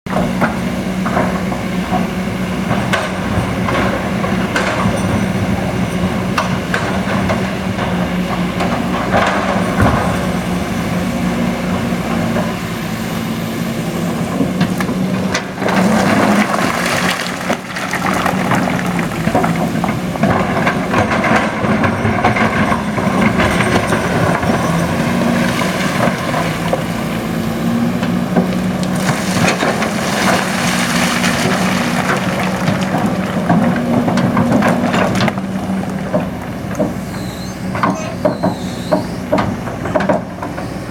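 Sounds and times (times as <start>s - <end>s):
diesel machinery engine hum: 0.1s - 40.9s
knocks and clatter: 14.4s - 26.9s.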